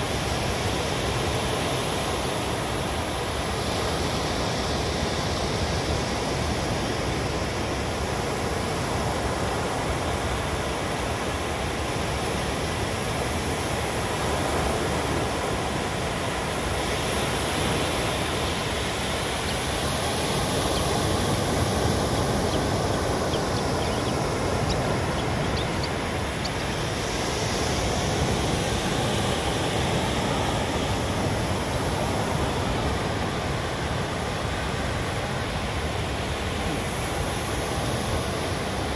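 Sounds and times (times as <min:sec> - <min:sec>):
waves breaking: 0:12.6 - 0:38.9.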